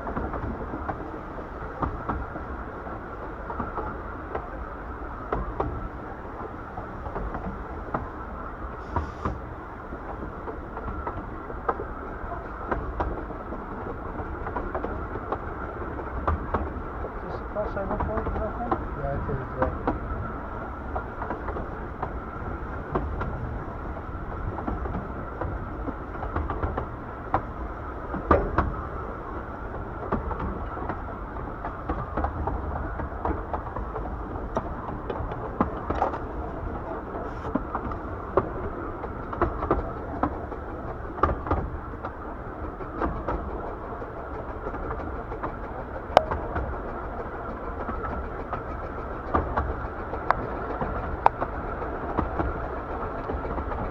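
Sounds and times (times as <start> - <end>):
train wheels rumbling on rail: 0.0 - 53.9
clicks and knocks over rail joints: 29.7 - 53.9.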